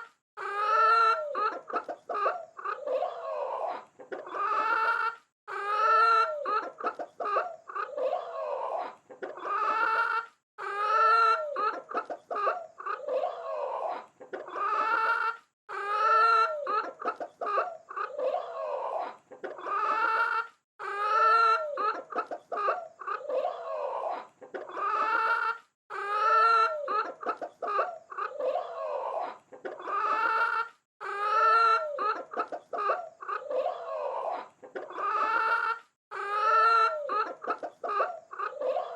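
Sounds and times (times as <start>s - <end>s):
chickens clucking: 0.0s - 38.9s.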